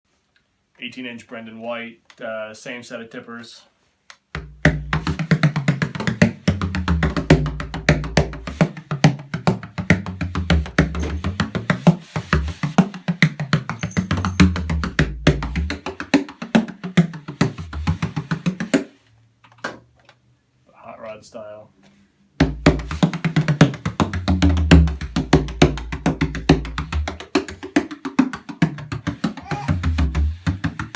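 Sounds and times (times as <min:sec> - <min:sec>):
frame drum played with stick: 0:04.4 - 0:18.9, 0:22.4 - 0:30.9.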